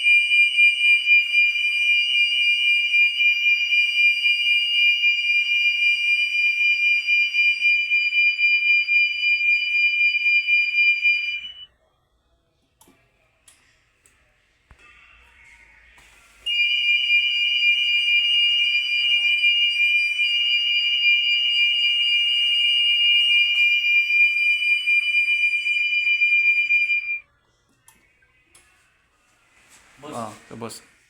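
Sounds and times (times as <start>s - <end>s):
high-pitched electronic alarm tone: 0.0s - 11.7s, 16.5s - 27.2s.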